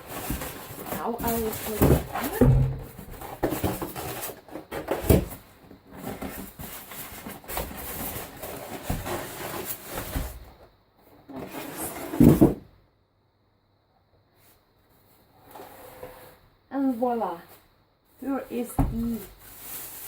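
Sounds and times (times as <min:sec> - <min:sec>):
handling knocks and rustling: 0:00.0 - 0:10.6, 0:11.2 - 0:12.7, 0:18.2 - 0:20.0.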